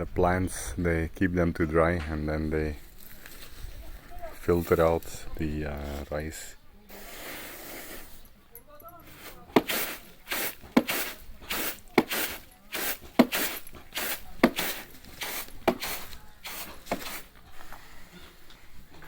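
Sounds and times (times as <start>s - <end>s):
swish of stalks: 9.1s - 17.3s
rice stalks thwacking: 9.5s - 17.2s.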